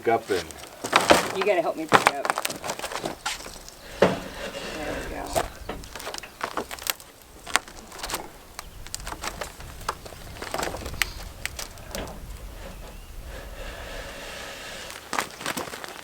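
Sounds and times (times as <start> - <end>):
tractor engine running: 1.5 - 15.2
metal knocks and clanks: 2.6 - 13.1.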